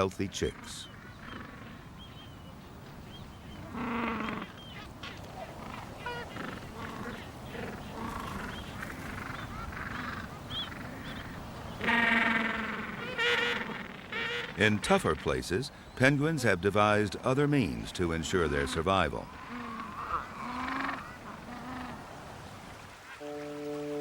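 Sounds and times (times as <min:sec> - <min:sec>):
penguin honking call: 0:06.0 - 0:08.6, 0:09.3 - 0:14.6, 0:23.2 - 0:24.0
short high penguin calls: 0:09.1 - 0:14.6.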